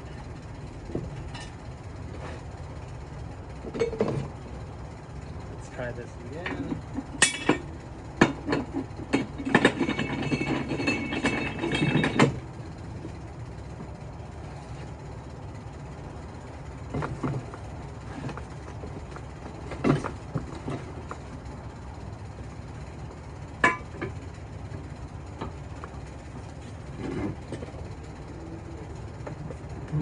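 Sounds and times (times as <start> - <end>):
metal parts rattling: 8.6 - 12.4.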